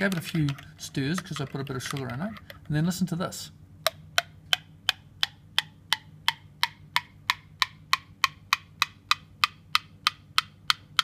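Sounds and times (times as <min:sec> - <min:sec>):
spoon tapping ceramic mug: 0:01.2 - 0:02.5.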